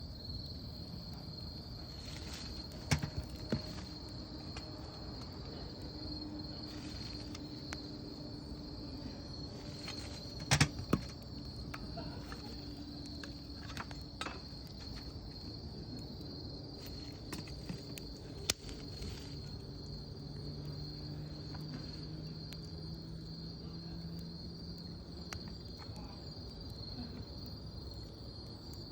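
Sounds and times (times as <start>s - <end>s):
crickets chirring: 0.0s - 28.9s
campfire pops and cracks: 0.2s - 28.9s.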